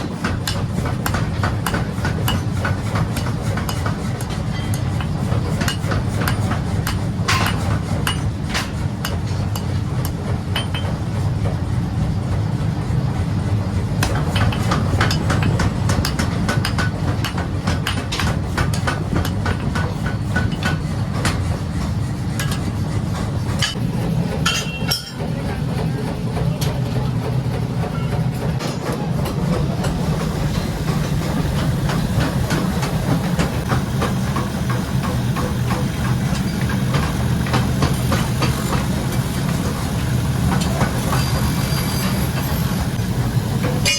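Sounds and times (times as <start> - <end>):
hammer striking iron on anvil: 0.0 - 11.1, 14.0 - 21.6, 22.4 - 22.8, 23.6 - 25.4, 43.6 - 43.9
workshop machinery drone: 0.0 - 43.9.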